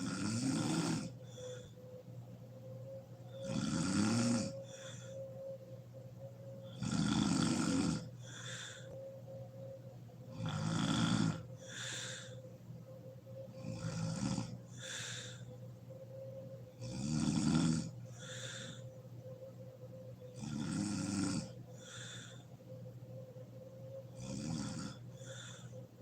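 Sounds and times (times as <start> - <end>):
woman snoring: 0.0 - 1.8, 3.3 - 5.2, 6.7 - 9.0, 10.3 - 12.4, 13.5 - 15.5, 16.8 - 18.9, 20.3 - 22.4, 24.1 - 25.8
breathy exhale: 4.6 - 5.4, 8.1 - 9.1, 11.6 - 12.6, 14.7 - 15.6, 18.1 - 19.0, 21.7 - 22.6, 25.1 - 25.8.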